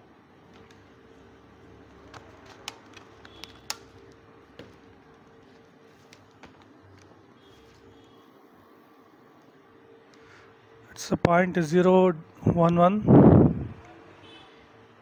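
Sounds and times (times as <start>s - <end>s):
faint steady hum: 0.0s - 15.0s
small sharp plastic clicks and taps: 2.0s - 4.8s.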